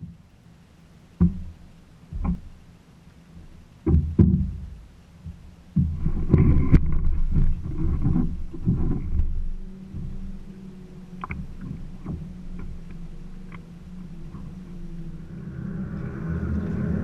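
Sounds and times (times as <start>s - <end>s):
rushing water: 0.0s - 17.0s
dull low knocks: 1.2s - 2.6s, 3.4s - 17.0s
wind noise: 3.8s - 17.0s.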